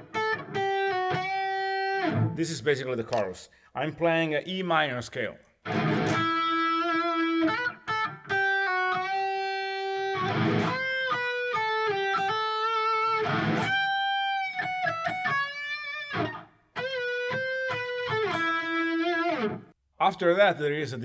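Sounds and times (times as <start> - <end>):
electric guitar melody: 0.0 - 2.4, 5.6 - 19.7.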